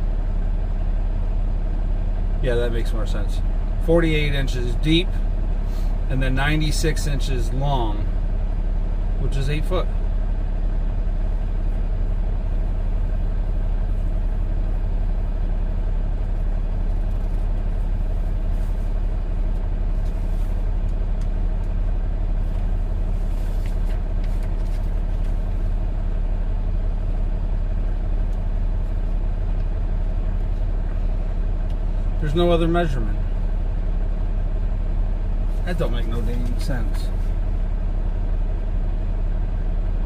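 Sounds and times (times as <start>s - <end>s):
diesel truck engine idling: 0.0s - 40.0s.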